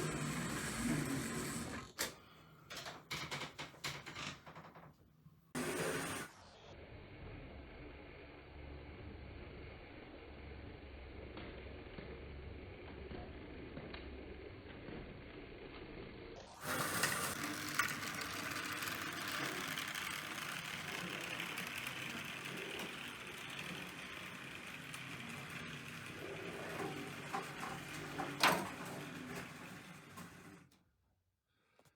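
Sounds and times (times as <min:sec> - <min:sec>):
model locomotive motor whir: 0:00.0 - 0:02.1, 0:05.6 - 0:30.8
wheel clatter on track: 0:16.6 - 0:30.7.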